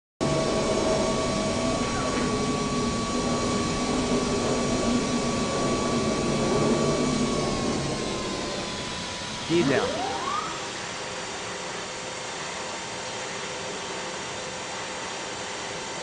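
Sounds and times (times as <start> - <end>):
thin high tone: 9.5 - 10.6.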